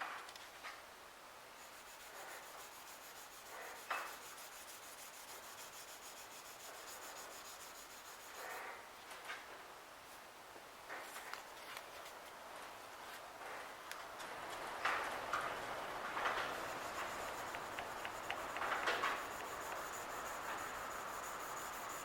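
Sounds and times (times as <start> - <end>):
sandpaper rubbing on metal blade: 1.6 - 8.8, 16.5 - 22.0.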